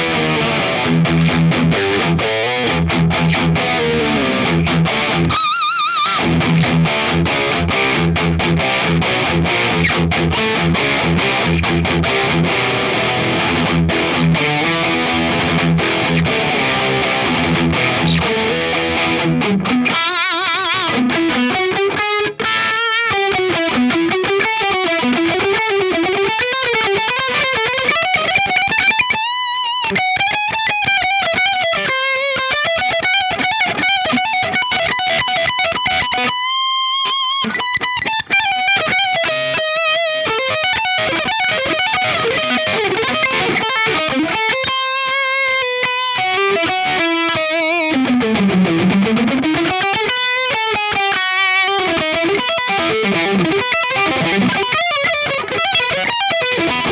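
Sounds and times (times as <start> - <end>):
distorted electric guitar: 0.0 - 56.9.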